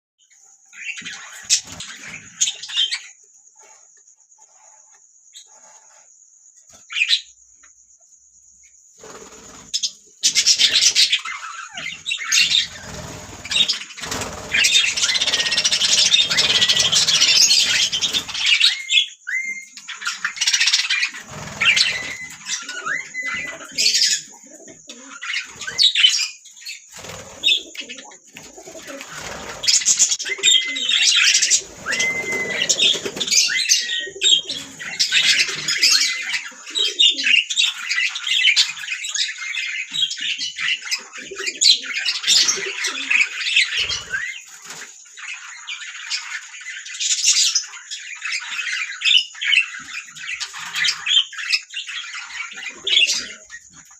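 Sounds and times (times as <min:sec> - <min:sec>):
budgerigars chattering: 0:09.6 - 0:44.4
bird whistles: 0:21.5 - 0:24.2, 0:30.2 - 0:36.2.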